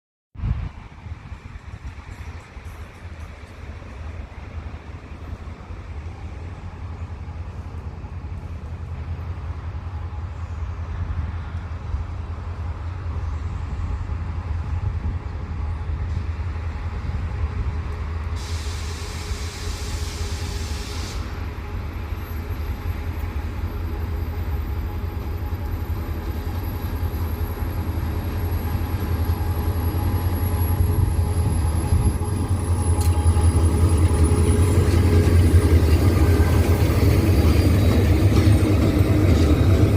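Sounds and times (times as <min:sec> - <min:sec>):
diesel locomotive engines rumbling: 0:00.4 - 0:39.9
brief hiss: 0:18.4 - 0:21.4.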